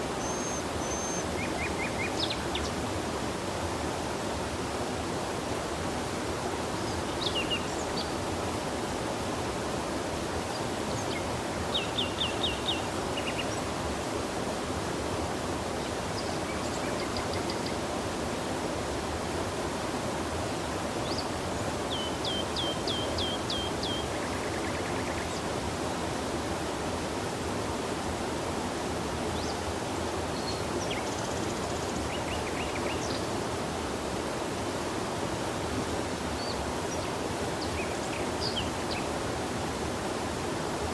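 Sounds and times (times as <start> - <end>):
river water rushing: 0.0 - 40.9
small birds chirping: 0.2 - 2.8.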